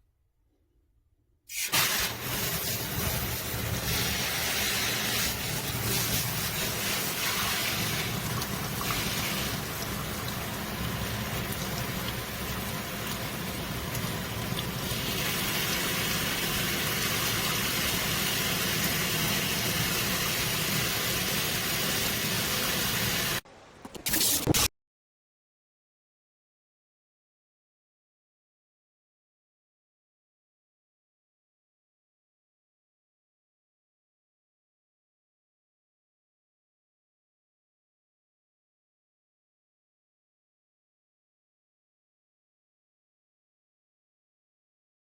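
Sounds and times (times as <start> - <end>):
water spraying from faucet sprayer: 1.5 - 23.4.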